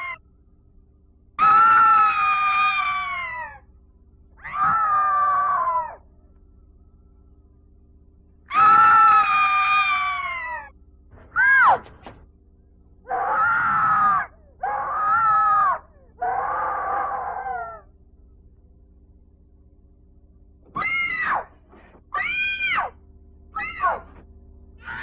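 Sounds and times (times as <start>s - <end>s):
steady low hum: 0.0s - 25.0s
wavering wailing cries: 1.4s - 3.6s, 8.5s - 10.8s, 13.0s - 17.9s.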